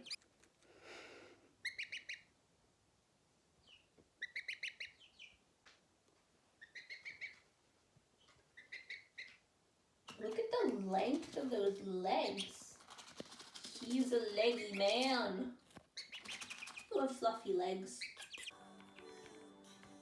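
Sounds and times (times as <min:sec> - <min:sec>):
baby poultry peeping: 0:00.0 - 0:00.2, 0:01.6 - 0:02.4, 0:03.6 - 0:05.5, 0:06.5 - 0:07.6, 0:08.2 - 0:11.4, 0:12.1 - 0:17.1, 0:18.0 - 0:19.2.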